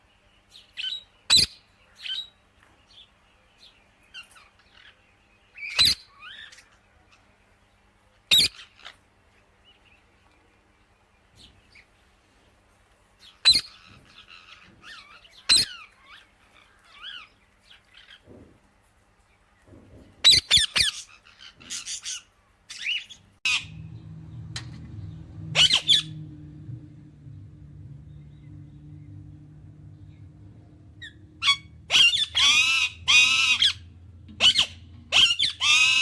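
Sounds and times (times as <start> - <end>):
parrot chirping and warbling: 0.8 - 2.3, 5.6 - 6.7, 8.3 - 9.0, 13.4 - 16.3, 20.2 - 23.9, 25.4 - 26.3, 30.9 - 36.0
parrot squawking: 5.6 - 6.5, 20.3 - 23.8, 25.5 - 26.2, 31.0 - 36.0
steady low hum: 23.1 - 36.0.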